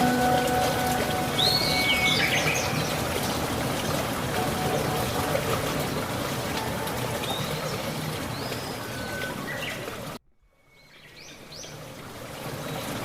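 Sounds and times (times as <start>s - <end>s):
birds chirping: 0.0s - 10.2s
flowing water rushing: 0.0s - 10.2s, 11.2s - 13.0s.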